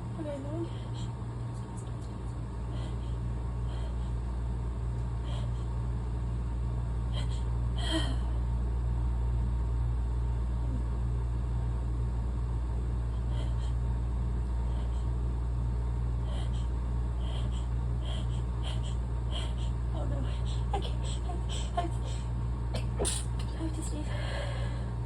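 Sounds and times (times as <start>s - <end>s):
steady low rumble: 0.0s - 25.0s
woman holding back sneeze: 22.8s - 23.4s.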